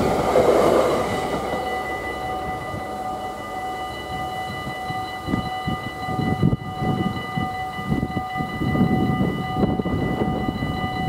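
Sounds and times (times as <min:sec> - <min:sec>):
level crossing bell ringing: 0:00.0 - 0:11.0
wind rumble on microphone: 0:04.1 - 0:11.0.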